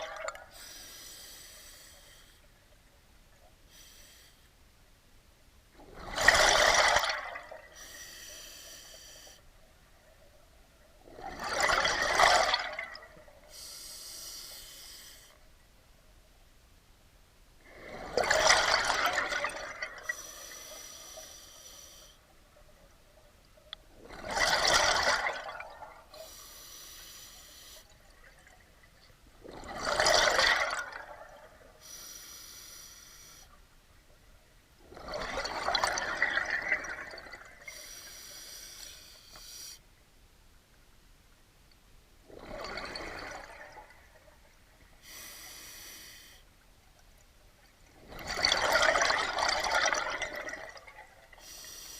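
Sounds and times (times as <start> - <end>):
exhaled bubbles gushing: 0.0 - 0.5, 5.8 - 7.8, 11.0 - 13.4, 17.7 - 20.2, 23.9 - 26.2, 28.0 - 31.6, 34.8 - 37.7, 42.3 - 44.6, 47.8 - 51.4
regulator breathing hiss: 0.5 - 2.4, 7.7 - 9.4, 13.5 - 15.4, 20.1 - 22.2, 26.2 - 27.9, 31.8 - 33.6, 37.7 - 39.8, 45.0 - 46.5, 51.4 - 51.9.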